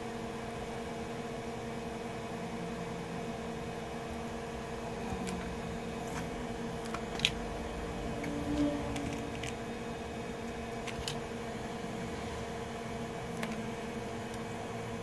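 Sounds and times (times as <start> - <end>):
electrical hum of equipment: 0.0 - 15.0
tools clicking and tapping: 8.2 - 9.6, 10.8 - 11.2.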